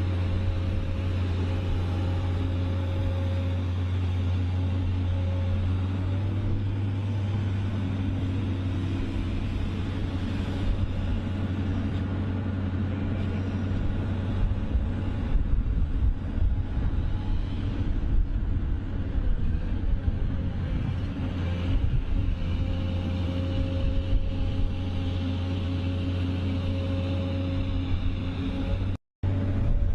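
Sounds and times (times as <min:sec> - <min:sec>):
large machine engine humming: 0:00.0 - 0:29.9.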